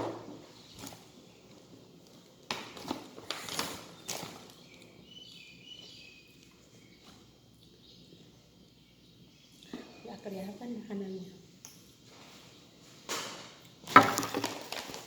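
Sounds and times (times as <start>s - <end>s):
wild birds chirping: 3.8s - 10.8s.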